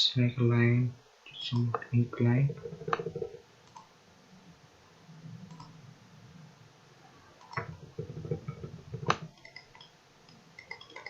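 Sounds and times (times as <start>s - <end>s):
faint room noise: 0.0s - 11.0s
computer mouse clicking: 2.6s - 3.9s, 5.5s - 5.8s, 7.4s - 11.0s.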